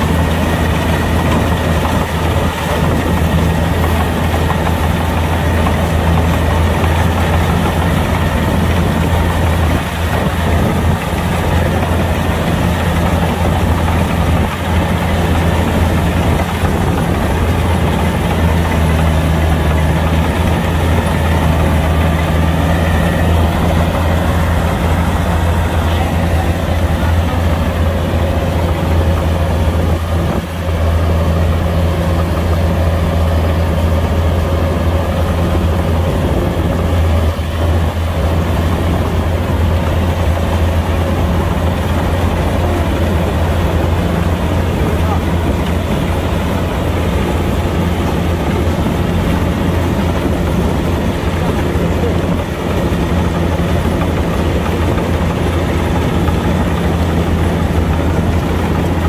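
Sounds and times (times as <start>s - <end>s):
diesel engine humming: 0.0s - 59.0s.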